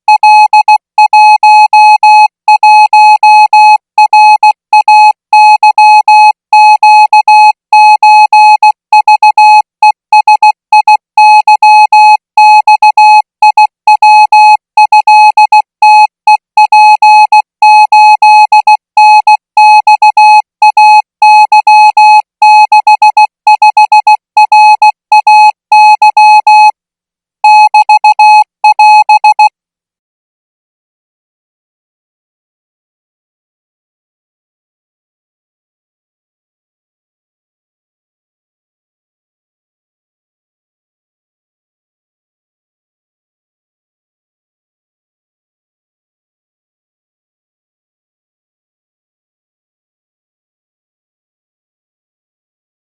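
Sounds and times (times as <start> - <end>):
morse code tone: 0.1 - 26.7, 27.4 - 29.5.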